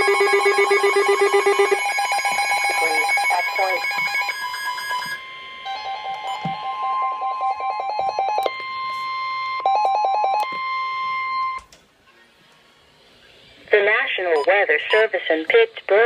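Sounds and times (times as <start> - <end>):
steady alert tone: 0.0 - 4.0
rapid beeping: 0.0 - 11.6.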